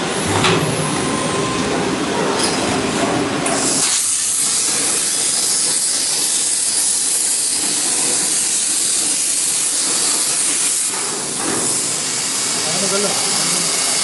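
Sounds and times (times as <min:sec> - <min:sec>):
plasma cutter hissing: 0:03.3 - 0:14.0.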